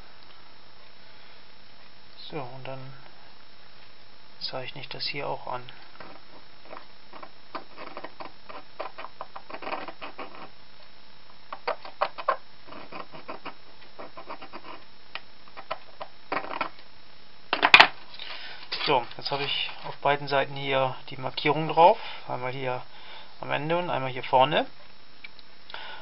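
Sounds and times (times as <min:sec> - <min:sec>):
steel strip scratching and clicking: 0:06.0 - 0:10.5.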